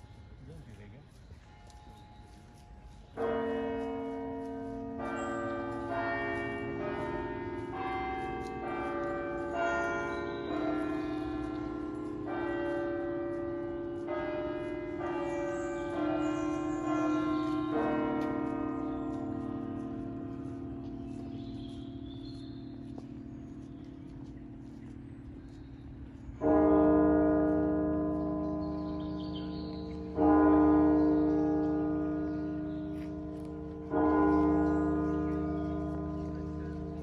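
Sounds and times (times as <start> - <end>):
clock bells chiming: 3.2 - 20.4.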